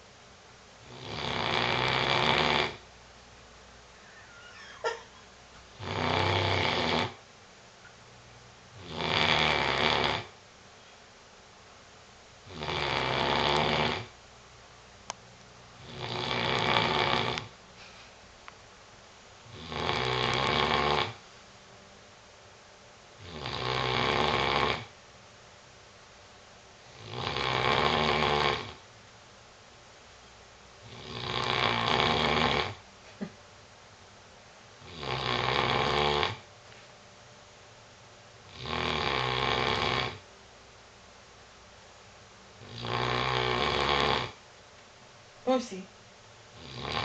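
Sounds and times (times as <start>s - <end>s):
dog snoring: 0.8s - 2.9s, 5.7s - 7.2s, 8.7s - 10.4s, 12.4s - 14.2s, 15.8s - 17.5s, 19.4s - 21.2s, 23.2s - 24.9s, 26.9s - 28.8s, 30.8s - 32.8s, 34.8s - 36.5s, 38.5s - 40.3s, 42.6s - 44.4s, 46.5s - 47.0s.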